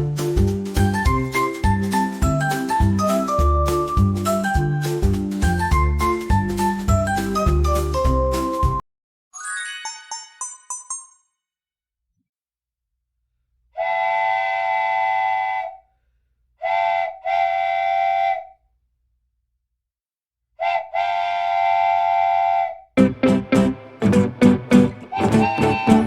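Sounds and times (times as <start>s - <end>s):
train whistle blowing: 13.8s - 15.8s, 16.6s - 18.5s, 20.6s - 22.8s, 25.1s - 26.0s.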